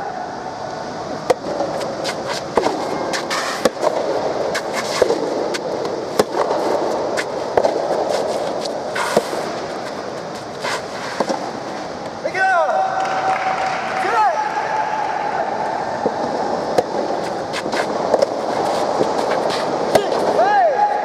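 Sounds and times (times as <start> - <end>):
tennis ball struck by rackets: 1.3 - 11.9, 16.3 - 20.4.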